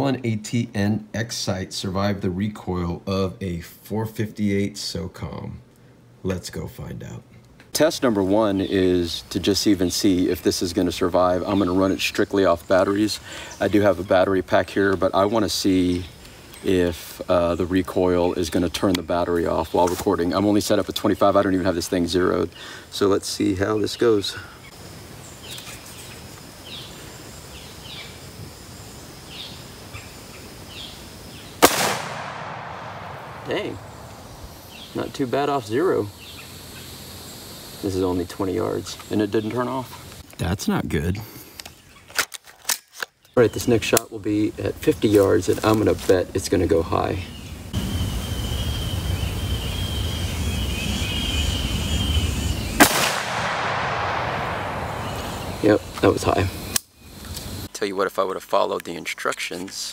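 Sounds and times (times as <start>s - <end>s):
small birds chirping: 6.3s - 42.2s, 43.1s - 59.9s
rifle shot with echo: 31.6s - 34.8s, 52.8s - 55.6s.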